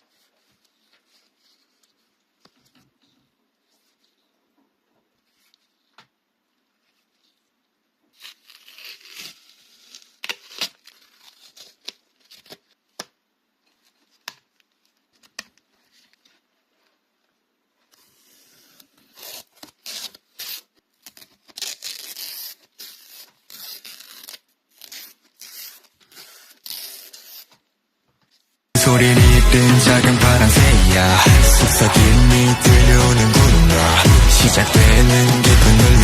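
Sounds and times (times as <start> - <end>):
packaging tearing and crinkling: 8.2 - 12.8, 18.0 - 27.5.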